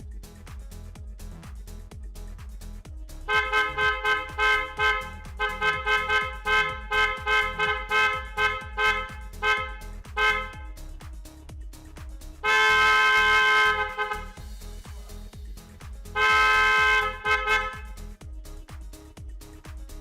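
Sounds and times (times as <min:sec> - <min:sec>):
background music with steady beat: 0:00.0 - 0:20.0
electric car horn short toots: 0:03.3 - 0:10.6, 0:12.4 - 0:14.4, 0:16.2 - 0:17.9.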